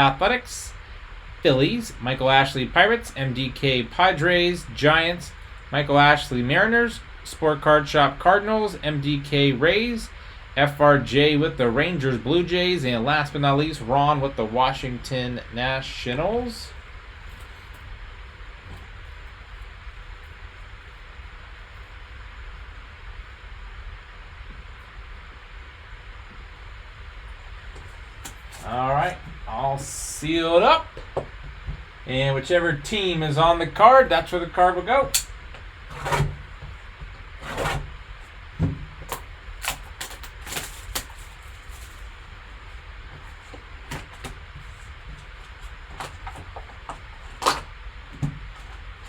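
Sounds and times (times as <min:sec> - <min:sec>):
cardboard and wrapper rubbing: 0:35.8 - 0:49.0.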